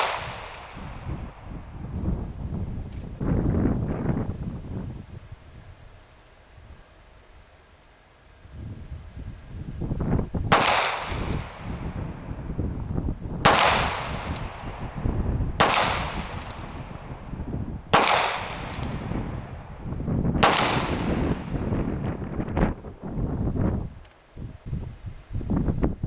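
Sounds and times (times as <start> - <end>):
pistol shots with echo: 0.0 - 1.1, 10.5 - 11.7, 13.4 - 14.7, 15.6 - 16.8, 17.9 - 19.1, 20.4 - 21.5.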